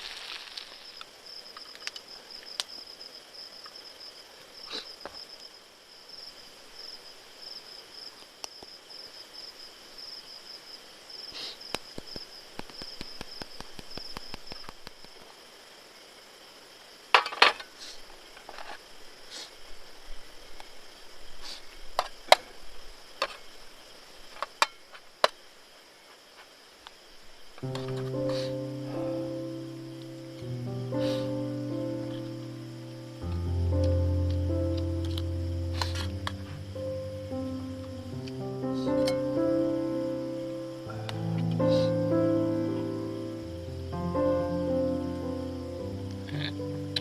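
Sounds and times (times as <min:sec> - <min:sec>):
insects chirping: 0:00.0 - 0:47.0.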